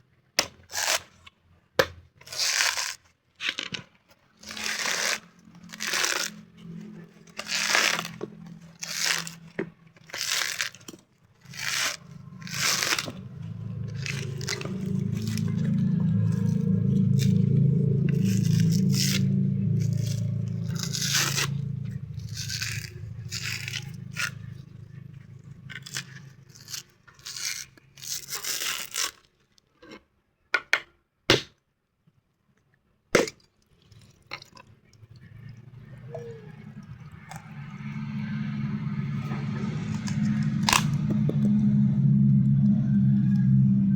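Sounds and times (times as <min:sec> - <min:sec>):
low hum: 0:04.4 - 0:28.4, 0:34.7 - 0:43.9
scraping strokes: 0:04.4 - 0:29.2.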